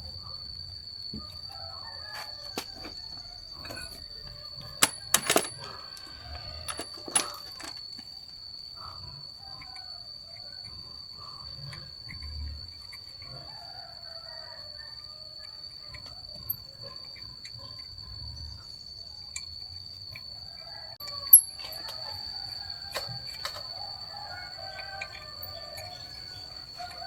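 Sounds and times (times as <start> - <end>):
high-pitched insect drone: 0.0 - 27.0
sharp clinks: 3.6 - 8.2, 21.3 - 22.0.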